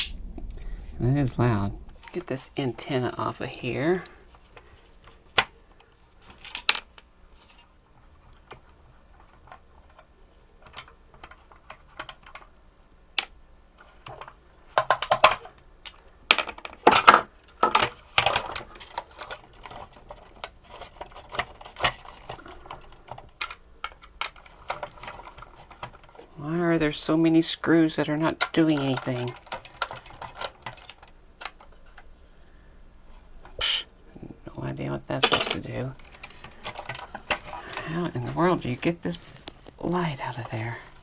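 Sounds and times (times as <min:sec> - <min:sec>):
small plastic parts clicking: 0:05.0 - 0:12.6, 0:13.2 - 0:26.3, 0:28.4 - 0:32.1, 0:35.2 - 0:38.0.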